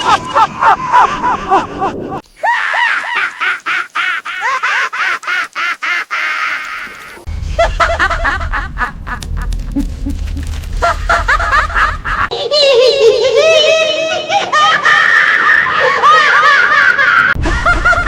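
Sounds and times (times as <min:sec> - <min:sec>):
high-pitched cackling laugh: 0:00.0 - 0:18.0
low hum: 0:06.8 - 0:12.3.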